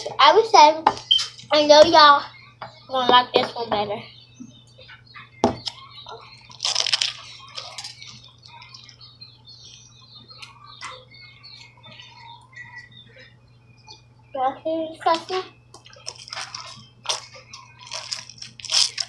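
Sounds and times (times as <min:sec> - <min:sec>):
slime squishing: 0:06.4 - 0:08.9, 0:15.8 - 0:19.0.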